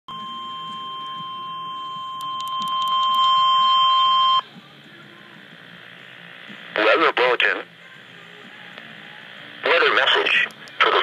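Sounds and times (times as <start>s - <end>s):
high continuous warning beep: 0.1s - 4.5s.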